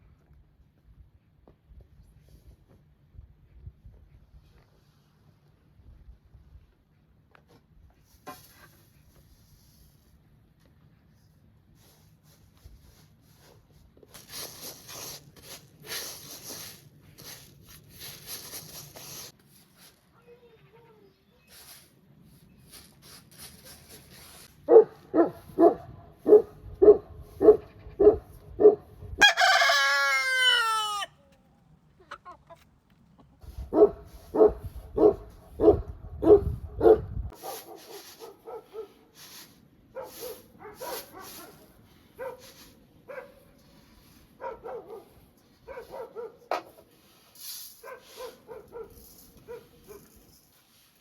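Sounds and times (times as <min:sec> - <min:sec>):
rooster crowing: 0:29.2 - 0:31.2
chickens clucking: 0:32.0 - 0:33.4.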